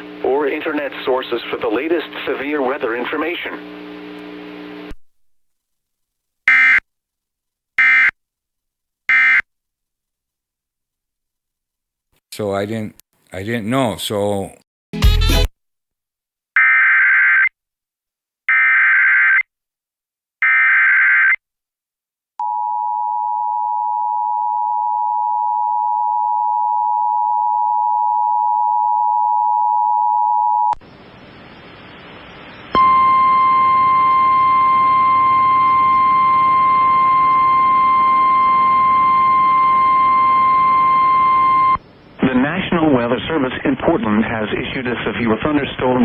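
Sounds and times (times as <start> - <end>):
steady buzzy alarm tone: 6.5 - 6.8, 7.8 - 8.1, 9.1 - 9.4, 31.2 - 41.8
two-tone attention signal: 32.7 - 41.8.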